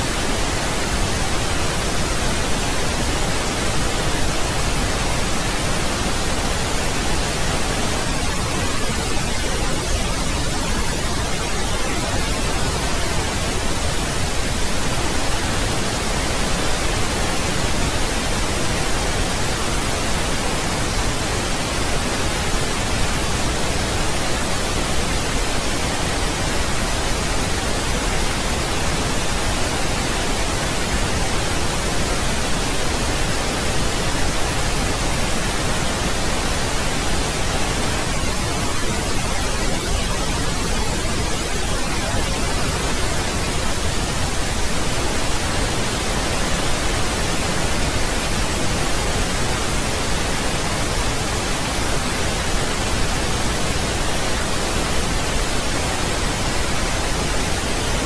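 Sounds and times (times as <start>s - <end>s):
pink noise hiss: 0.0s - 58.0s.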